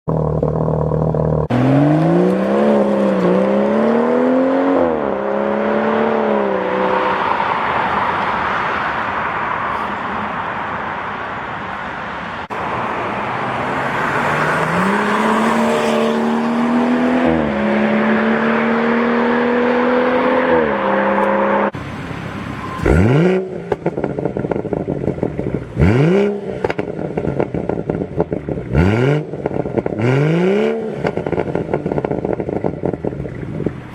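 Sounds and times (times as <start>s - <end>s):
car engine accelerating: 0.1s - 8.3s, 12.4s - 33.9s
exhaust crackles and pops: 23.6s - 30.0s, 31.0s - 33.9s.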